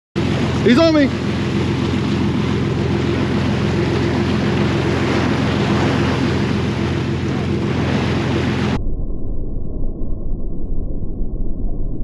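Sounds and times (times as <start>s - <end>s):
boat engines running: 0.2s - 8.8s
rushing water: 0.2s - 8.8s
wind on microphone: 0.2s - 8.8s
muffled underwater rumble: 0.2s - 12.0s.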